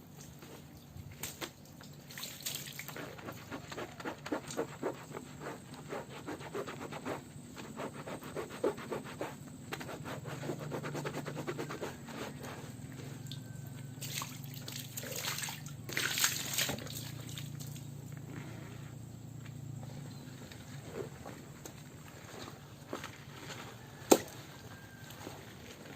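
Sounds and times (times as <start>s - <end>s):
hand rubbing on fabric: 2.9s - 13.2s.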